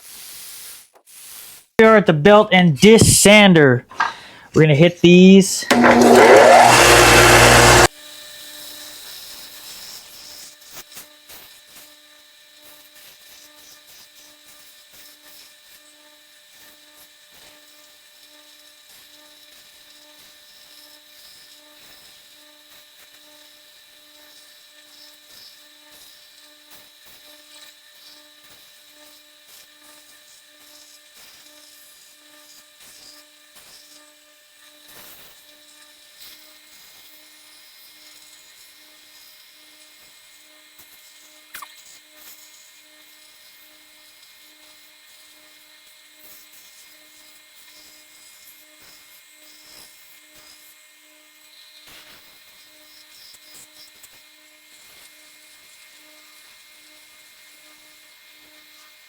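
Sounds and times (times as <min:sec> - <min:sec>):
sander motor humming: 0:05.6 - 0:07.9
wood rubbing on abrasive: 0:05.6 - 0:07.9.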